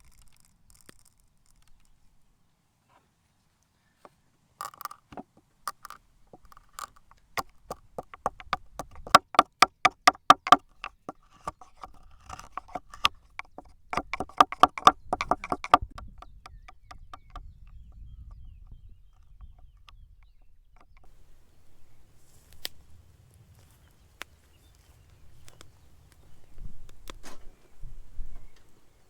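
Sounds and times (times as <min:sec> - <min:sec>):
hard object knocking with ring: 0:05.2 - 0:17.4.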